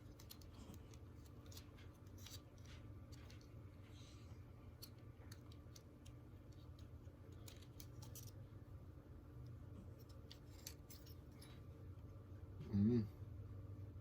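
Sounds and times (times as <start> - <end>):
light clicks of small parts: 0.0 - 4.1, 4.7 - 8.4
low steady hum: 0.0 - 14.0.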